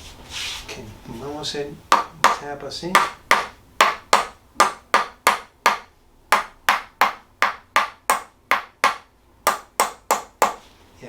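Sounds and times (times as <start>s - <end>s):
adjusting hammer tapping: 1.9s - 10.6s.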